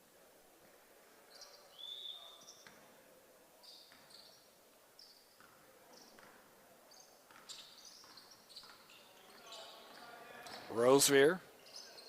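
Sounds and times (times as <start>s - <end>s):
shoes squeaking on hardwood court: 3.6s - 12.0s.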